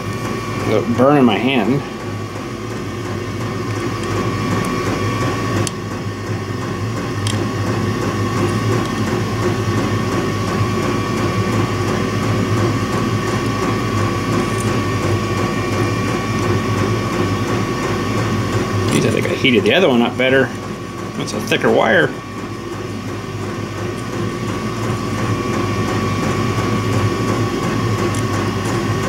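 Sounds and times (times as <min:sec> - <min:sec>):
heat gun humming with high whine: 0:00.0 - 0:29.0.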